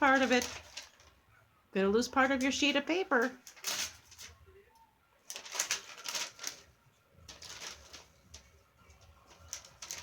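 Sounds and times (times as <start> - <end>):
bird tearing paper: 0.1 - 1.1, 3.4 - 4.4, 5.2 - 6.7, 7.3 - 8.5, 9.3 - 10.0.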